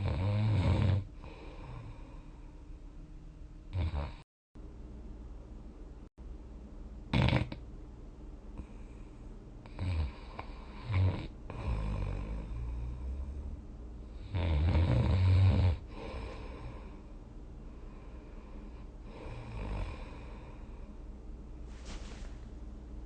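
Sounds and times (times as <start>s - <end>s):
person snoring: 0.0s - 2.4s, 3.7s - 4.2s, 9.7s - 13.6s, 14.2s - 17.0s, 18.8s - 20.8s.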